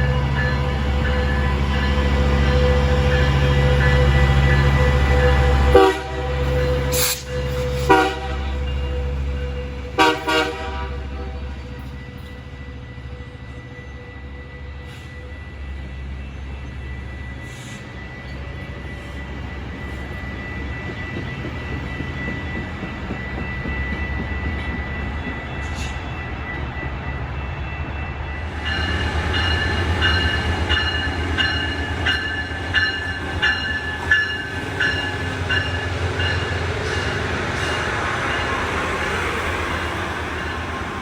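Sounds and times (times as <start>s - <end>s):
high metallic squeal: 0.0s - 9.9s
train rumbling: 0.0s - 41.0s.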